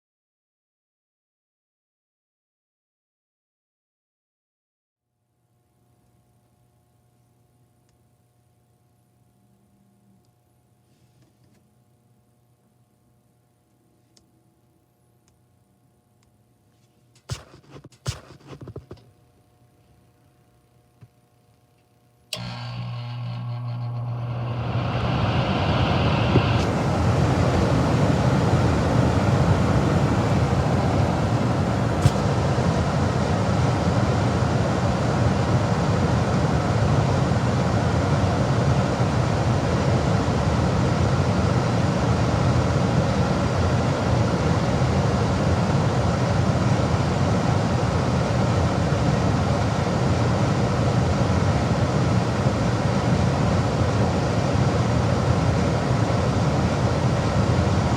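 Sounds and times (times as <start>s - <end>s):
gas furnace roaring: 22.3s - 57.9s.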